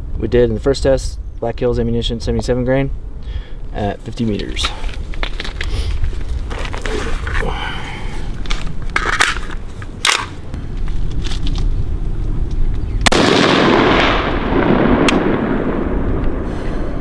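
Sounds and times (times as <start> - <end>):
rushing gunshot tail: 13.0 - 17.0
rifle shots: 13.1 - 16.0.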